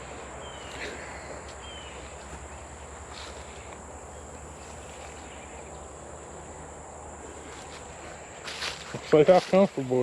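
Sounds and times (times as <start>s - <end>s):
insects droning: 0.0s - 10.0s.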